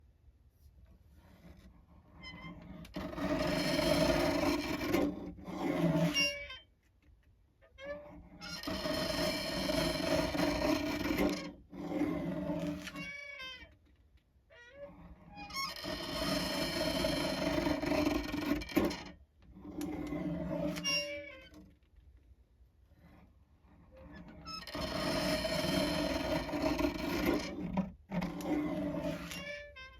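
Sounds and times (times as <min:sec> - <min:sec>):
paper slicer squeaking: 0:08.4 - 0:13.4, 0:15.4 - 0:19.1, 0:24.5 - 0:29.8.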